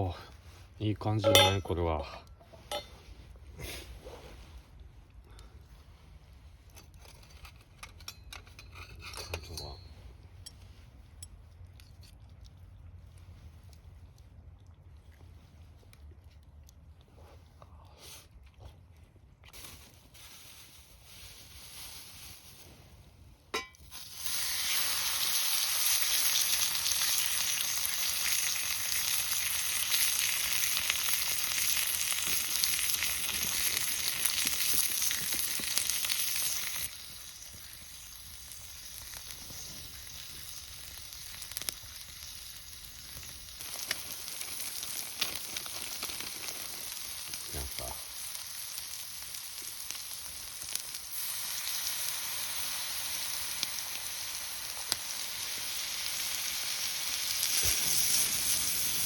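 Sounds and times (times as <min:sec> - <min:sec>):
food sizzling in a pan: 0:23.6 - 0:59.0.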